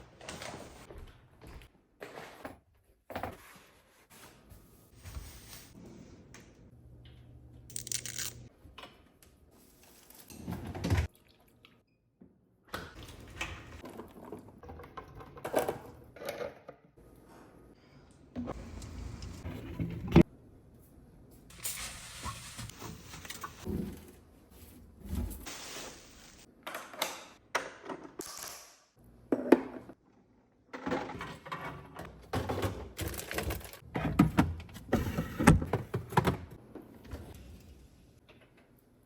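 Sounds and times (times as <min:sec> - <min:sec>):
containers clunking and knocking: 0:13.0 - 0:16.8.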